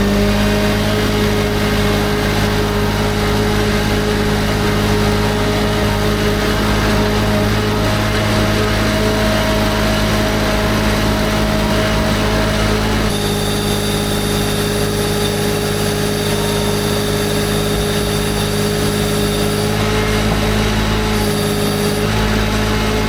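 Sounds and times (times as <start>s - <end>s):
skid steer engine running: 0.0s - 23.0s.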